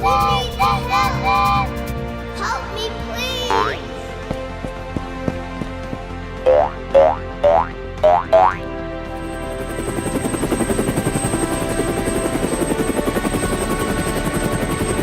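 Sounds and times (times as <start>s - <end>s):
cartoon helicopter rotor chopping: 0.0s - 2.9s, 6.4s - 8.6s, 9.2s - 15.0s
background music: 0.0s - 15.0s
rising boing: 6.5s - 8.6s.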